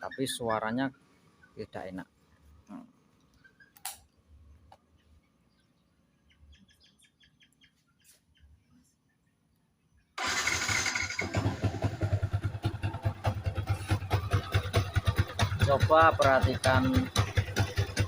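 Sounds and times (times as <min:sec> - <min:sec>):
faint bird chirps: 0:00.0 - 0:10.2
motorcycle engine running: 0:10.2 - 0:18.0.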